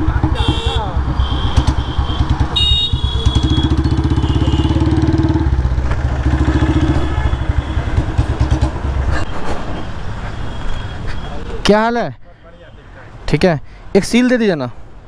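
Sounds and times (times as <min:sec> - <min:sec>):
motorcycle engine running: 0:00.0 - 0:09.2.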